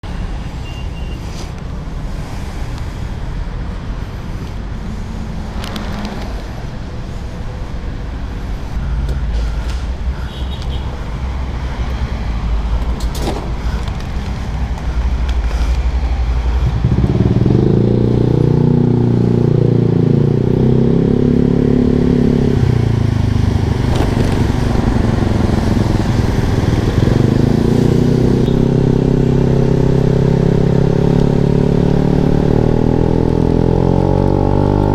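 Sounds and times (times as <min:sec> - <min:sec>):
scooter engine exhaust rumble: 0:22.4 - 0:34.9.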